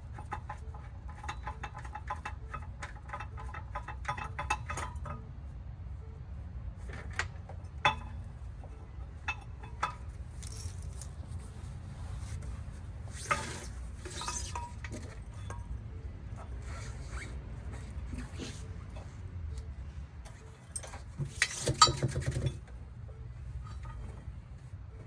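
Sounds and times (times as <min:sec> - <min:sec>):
low steady rumble: 0:01.9 - 0:25.0
metal tools clinking and rattling: 0:09.2 - 0:11.4, 0:13.2 - 0:15.8, 0:20.3 - 0:22.7.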